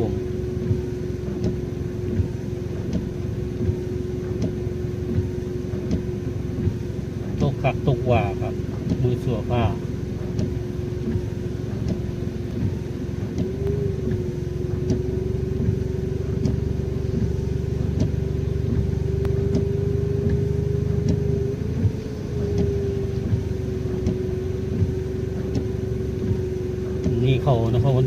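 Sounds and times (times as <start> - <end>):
car engine running: 0.0 - 28.0
faint ticks: 0.7 - 6.8, 10.2 - 15.8, 16.4 - 16.6, 17.2 - 20.4, 21.0 - 26.4.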